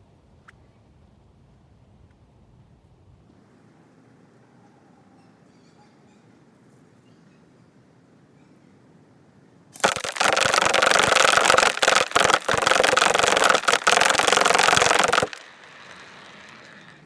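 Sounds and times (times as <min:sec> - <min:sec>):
airsoft rifle automatic fire: 0:09.8 - 0:15.7.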